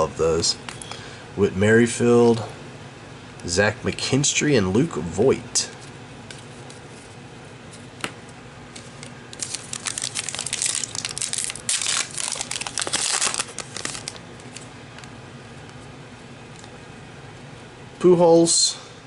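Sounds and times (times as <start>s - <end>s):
plastic wrapper tearing and crinkling: 8.8s - 14.7s.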